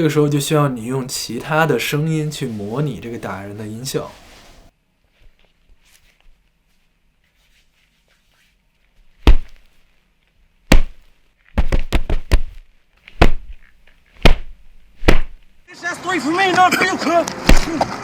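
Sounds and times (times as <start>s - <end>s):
punch hits: 9.2s - 9.7s, 10.7s - 12.6s, 13.2s - 13.6s, 14.2s - 15.6s, 17.5s - 17.8s.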